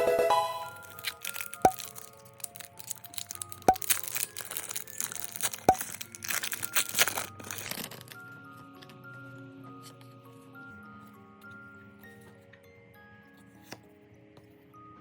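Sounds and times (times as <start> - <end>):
background music: 0.0 - 15.0
foil wrapper crinkling: 0.7 - 8.3.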